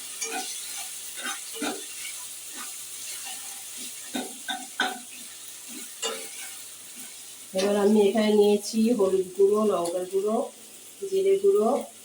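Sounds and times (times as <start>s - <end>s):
spatula scraping and knocking pan: 0.0s - 7.8s
paste sizzling in oil: 0.0s - 12.0s.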